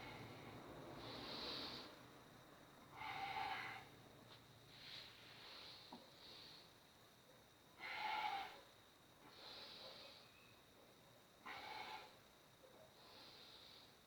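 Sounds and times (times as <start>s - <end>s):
person breathing slowly: 0.0s - 2.2s, 2.9s - 4.0s, 4.7s - 6.8s, 9.2s - 10.4s, 13.0s - 14.0s.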